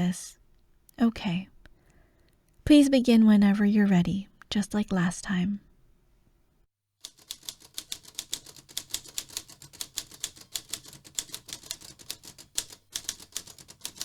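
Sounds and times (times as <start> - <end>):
typewriter keys striking: 7.0 - 14.0.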